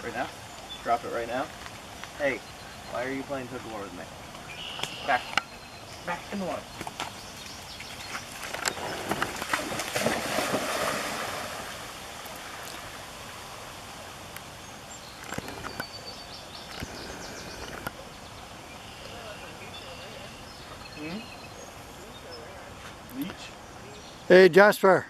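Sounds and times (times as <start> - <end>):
dog swimming splashes: 8.0 - 12.6
dog splashing into water: 8.1 - 12.6.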